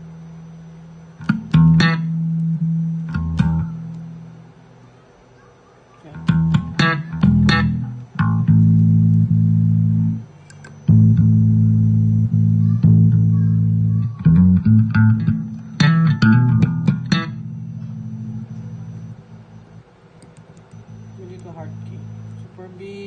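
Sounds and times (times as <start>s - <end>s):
electric bass guitar notes: 0.8s - 4.6s, 6.1s - 20.0s.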